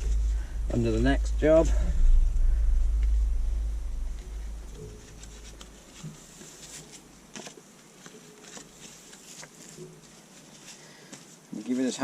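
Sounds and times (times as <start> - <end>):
low rumble: 0.0 - 7.2.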